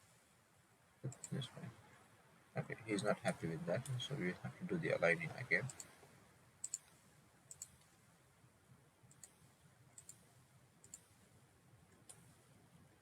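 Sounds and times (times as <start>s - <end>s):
computer mouse clicking: 1.1s - 1.4s, 5.7s - 6.0s, 6.6s - 8.0s, 9.1s - 11.2s, 11.9s - 12.4s.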